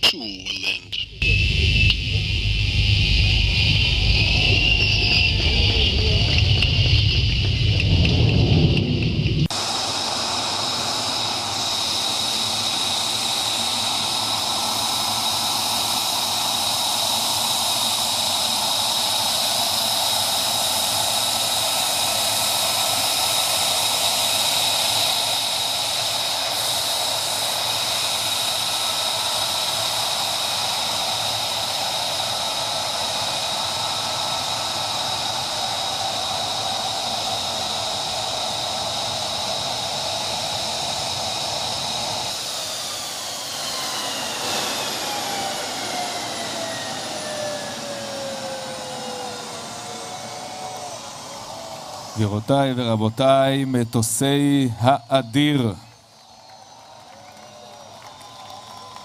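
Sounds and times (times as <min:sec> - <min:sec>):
jet engine hiss: 0:00.0 - 0:59.0
jet engine whine: 0:00.0 - 0:59.0.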